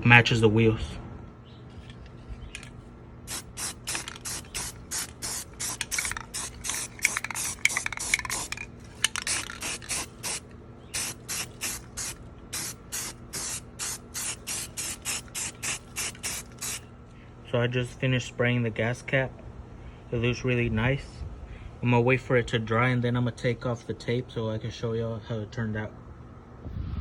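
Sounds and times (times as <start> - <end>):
spray paint hissing: 3.3 - 16.8.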